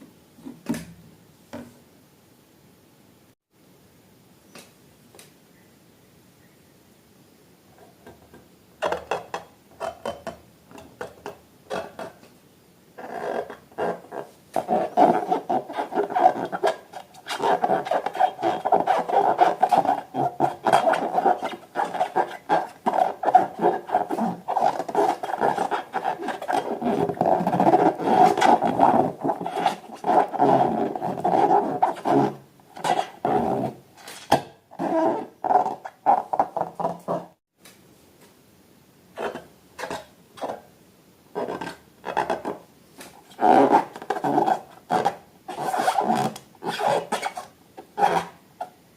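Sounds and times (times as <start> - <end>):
squeaky squelching rubbing: 13.0 - 33.6, 43.3 - 48.7.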